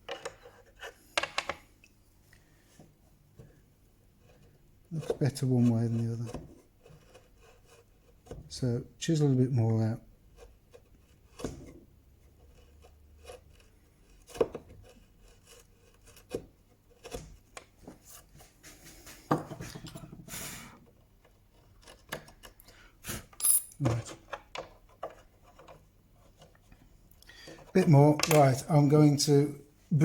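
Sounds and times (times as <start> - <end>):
chisel scraping wood: 0.1 - 1.2, 3.4 - 8.6, 10.0 - 23.3, 24.2 - 29.0
chisel clicking and tapping wood: 0.1 - 1.7, 5.0 - 5.2, 12.4 - 17.8, 21.2 - 22.6, 24.3 - 26.6.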